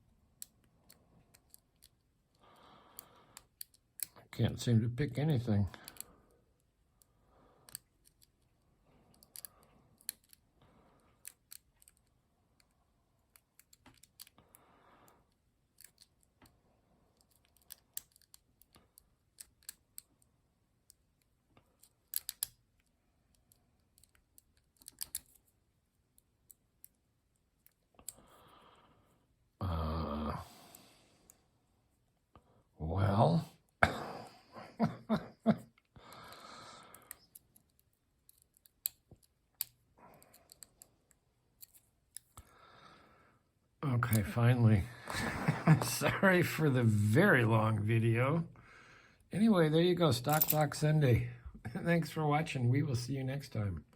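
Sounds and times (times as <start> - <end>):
lock pick clicks and scrapes: 0.4 - 2.1, 3.0 - 4.2, 7.7 - 8.5, 9.1 - 10.4, 11.2 - 14.4, 15.3 - 16.4, 17.2 - 20.1, 21.6 - 25.5, 37.0 - 40.9, 41.6 - 42.4
person sighing: 29.6 - 31.0.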